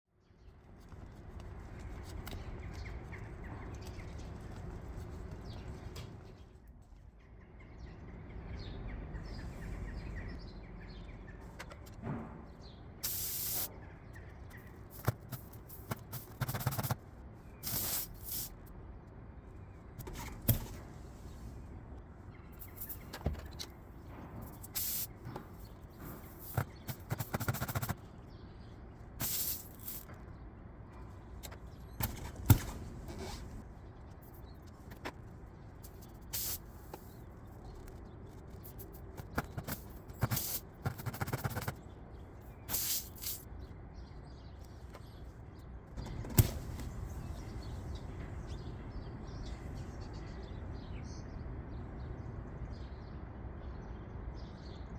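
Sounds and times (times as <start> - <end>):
short rasping hissing bursts: 13.0 - 13.7, 17.6 - 18.5, 29.2 - 30.0, 42.7 - 43.4
clicks knocks and scrapes: 20.0 - 21.0, 31.0 - 33.6.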